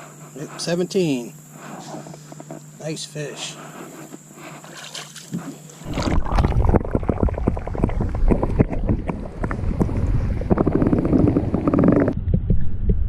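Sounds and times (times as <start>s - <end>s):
faint steady hum: 0.0s - 13.0s
wind rumbling on microphone: 5.8s - 13.0s.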